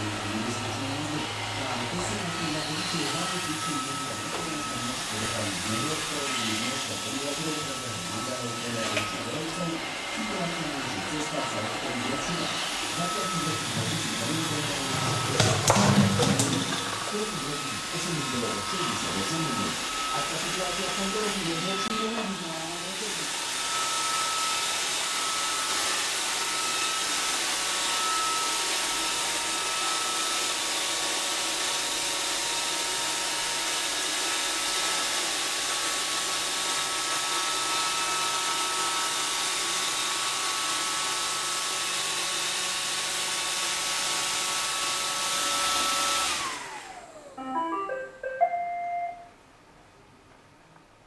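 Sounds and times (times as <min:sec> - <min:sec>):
robot vacuum whirring hum: 0:00.0 - 0:43.8, 0:44.4 - 0:47.4
electronic beep tones: 0:47.4 - 0:49.4.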